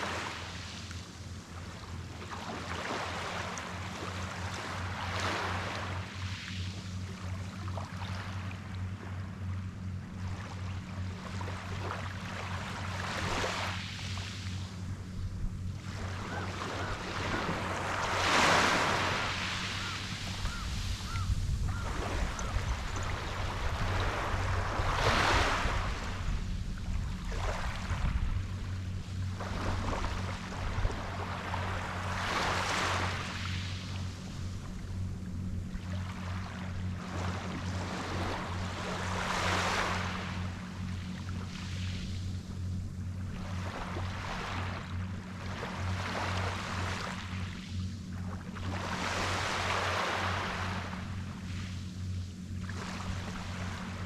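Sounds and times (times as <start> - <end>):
small waves washing ashore: 0.0 - 54.0
steady low hum: 0.0 - 54.0
sea waves washing onto beach: 15.8 - 34.0.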